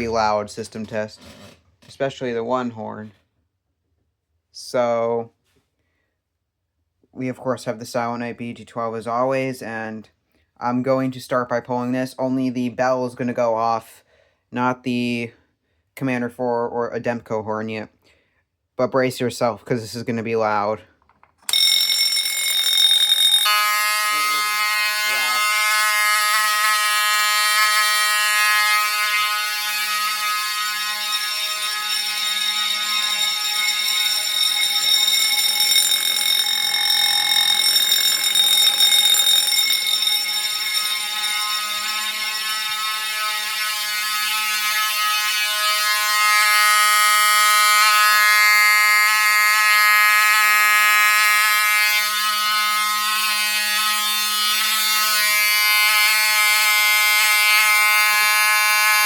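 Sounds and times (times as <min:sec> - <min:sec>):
fire alarm bell ringing: 0:00.0 - 0:00.4, 0:21.4 - 0:59.0
fire alarm horn sounding: 0:21.4 - 0:59.0.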